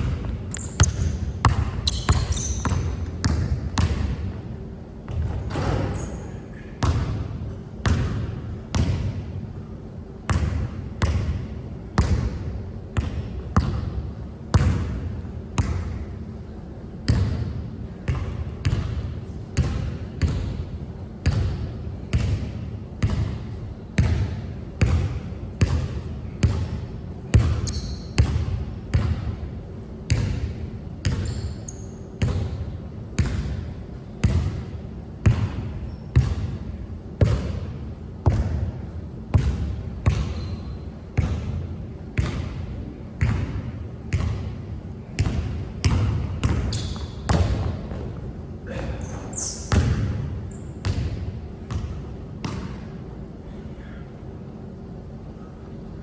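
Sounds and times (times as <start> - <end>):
basketball bouncing on hard court: 0.0 - 4.3, 6.8 - 9.2, 10.3 - 11.4, 12.0 - 12.4, 13.0 - 15.0, 18.1 - 19.0, 19.6 - 20.6, 21.2 - 29.3, 30.1 - 31.6, 32.2 - 32.6, 33.2 - 33.6, 34.2 - 35.6, 36.2 - 36.6, 37.2 - 38.7, 39.3 - 40.6, 41.2 - 41.6, 42.2 - 42.6, 43.2 - 44.6, 45.2 - 48.2, 49.7 - 52.8.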